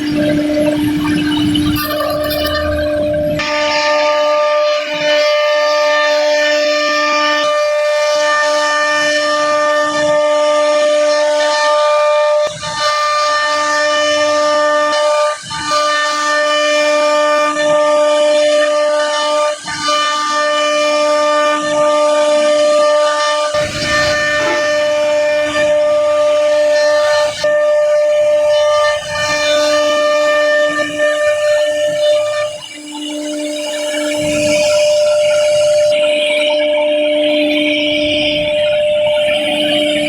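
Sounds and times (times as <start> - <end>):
router spindle whining cutting wood: 14.9 - 40.0.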